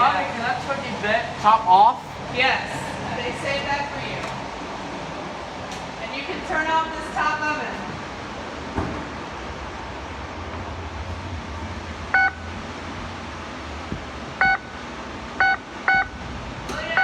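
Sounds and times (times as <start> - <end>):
low steady hum: 0.0 - 17.0
oven control panel beeps: 14.4 - 14.7, 15.4 - 17.0.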